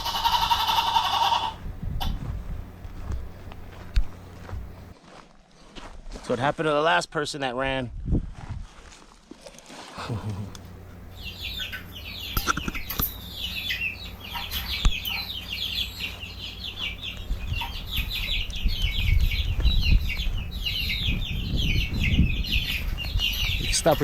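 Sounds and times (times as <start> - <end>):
chickens calling: 0.0 - 2.3, 10.0 - 24.0
low steady hum: 0.0 - 5.0, 10.0 - 23.9.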